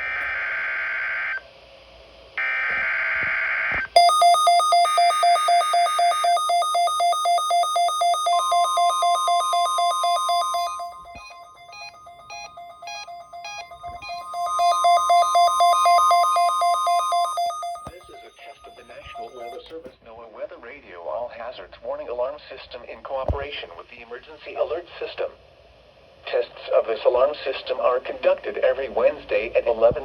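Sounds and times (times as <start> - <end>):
steady high warning alarm tone: 2.4 - 19.8
rapid electronic alert beeping: 4.0 - 19.6.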